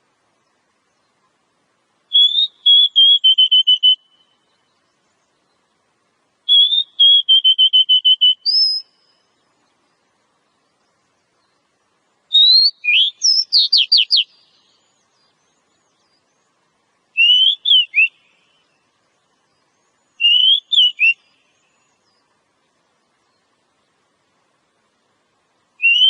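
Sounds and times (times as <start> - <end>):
bird singing whistled notes: 2.1 - 5.7, 6.4 - 11.7, 12.3 - 22.4, 25.8 - 26.0.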